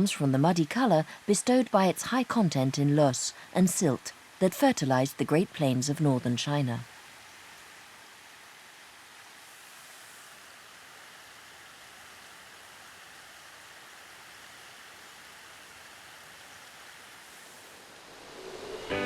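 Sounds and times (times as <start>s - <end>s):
faint flowing water: 0.0s - 19.0s.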